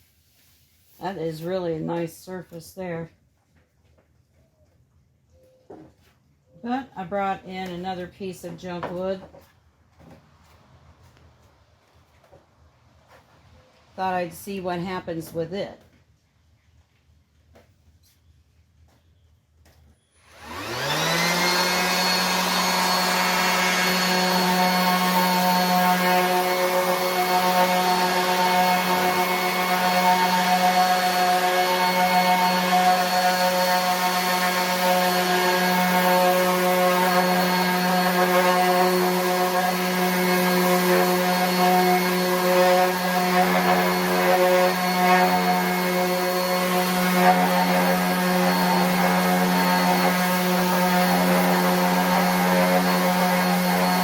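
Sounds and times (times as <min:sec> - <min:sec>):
orbit sander whining: 0:20.1 - 0:54.0.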